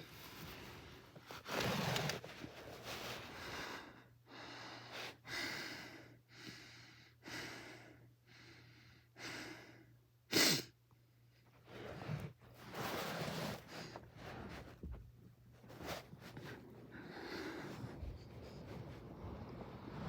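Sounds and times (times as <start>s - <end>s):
person breathing: 16.6s - 20.0s.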